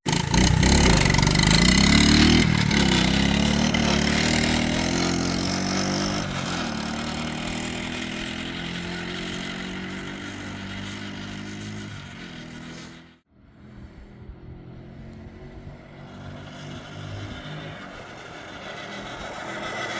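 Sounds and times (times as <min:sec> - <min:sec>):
small engine running: 0:00.1 - 0:19.9.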